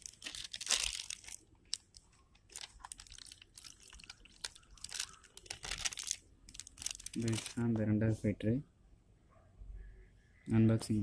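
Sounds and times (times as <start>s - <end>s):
plastic packaging crinkling: 0.0s - 7.8s.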